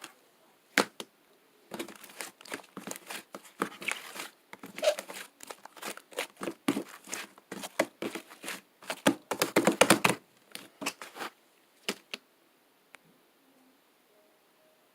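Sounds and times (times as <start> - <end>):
slime squished wet crackling: 1.7 - 9.0.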